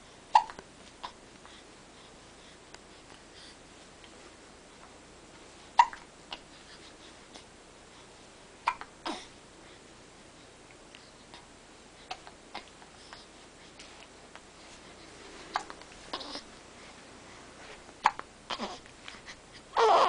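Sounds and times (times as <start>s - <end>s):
baby hiccuping: 0.4s - 0.6s, 5.8s - 6.0s, 8.6s - 9.2s, 15.5s - 16.4s, 18.0s - 18.8s.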